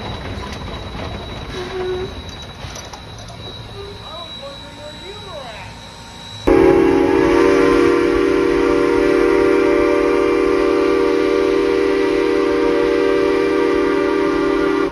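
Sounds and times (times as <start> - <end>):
train whistle blast: 6.4 - 14.9.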